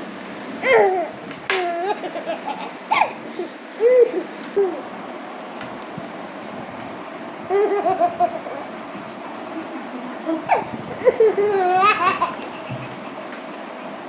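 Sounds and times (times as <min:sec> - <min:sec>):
baby laughing: 0:00.6 - 0:04.9, 0:07.5 - 0:14.0.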